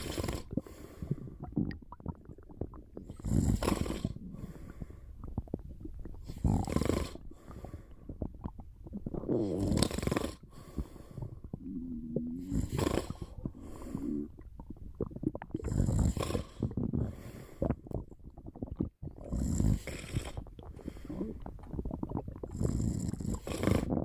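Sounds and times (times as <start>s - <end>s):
stomach rumbling: 0.0s - 24.0s
person snoring: 3.1s - 4.5s, 6.3s - 7.2s, 9.0s - 10.4s, 11.6s - 14.3s, 15.6s - 17.4s, 19.3s - 21.5s, 22.5s - 24.0s.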